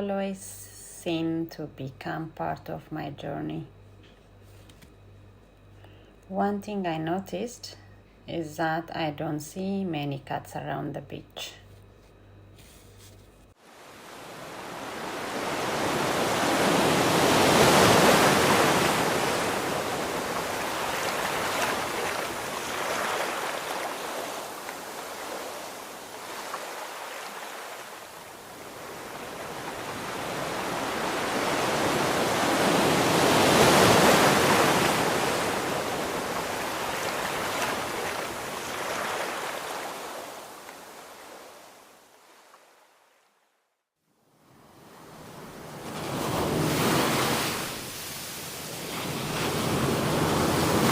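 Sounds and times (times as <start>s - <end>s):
ocean surf on sandy beach: 13.6s - 42.4s, 44.4s - 50.9s.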